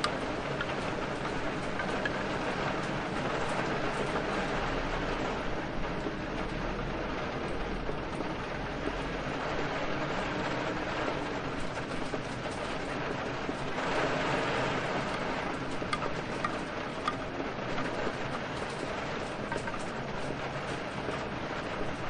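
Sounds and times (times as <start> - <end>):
steady rain: 0.0 - 22.0.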